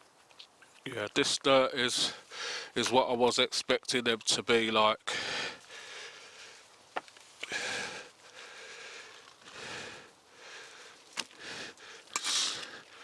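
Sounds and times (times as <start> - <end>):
man sniffling: 7.4 - 13.0.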